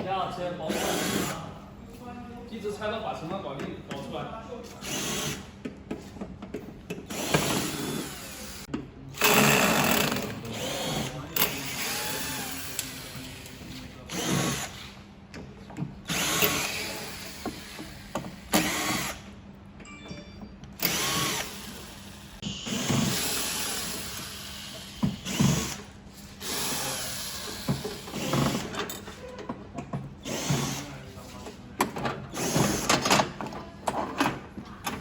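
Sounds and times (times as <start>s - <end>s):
cordless drill whirring: 7.1s - 8.6s, 9.2s - 13.2s, 14.1s - 14.8s, 16.1s - 19.2s, 20.8s - 28.7s.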